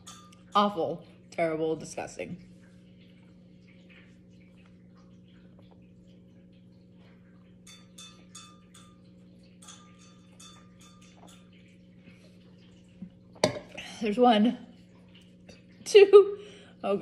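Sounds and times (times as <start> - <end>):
low electrical hum: 0.0 - 17.0
faint ringing clicks: 3.1 - 12.0.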